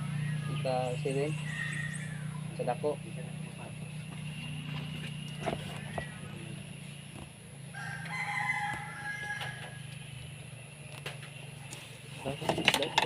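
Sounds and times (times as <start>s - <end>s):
steady low hum: 0.0s - 13.0s
rooster crowing: 1.3s - 2.5s, 5.4s - 6.6s, 7.7s - 10.2s.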